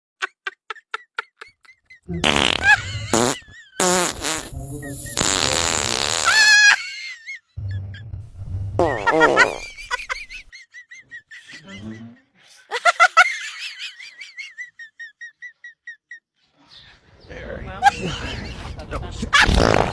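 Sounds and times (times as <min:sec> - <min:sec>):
sputtering fart sound effects: 0:02.2 - 0:06.6, 0:08.2 - 0:10.2, 0:19.4 - 0:19.9.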